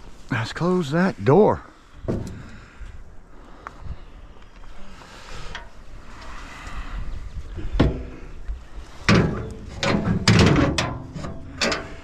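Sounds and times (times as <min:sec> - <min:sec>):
scrap metal knocks and rattles: 0:09.0 - 0:12.0.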